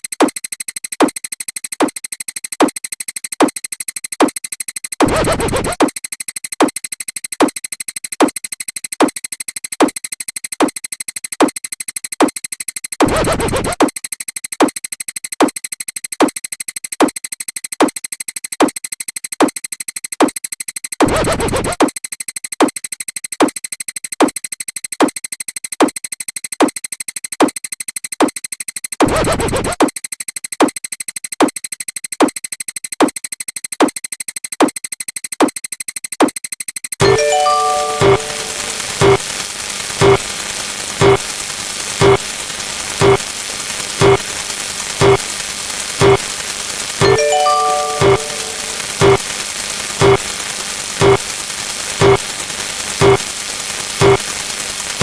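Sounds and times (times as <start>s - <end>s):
dj scratch: 5.0s - 5.8s, 13.0s - 13.8s, 21.0s - 21.8s, 29.0s - 29.8s, 40.0s - 40.4s, 41.0s - 45.4s, 46.0s - 46.4s, 50.0s - 50.4s, 51.0s - 55.0s
high synth tones: 37.0s - 39.4s, 47.0s - 49.4s.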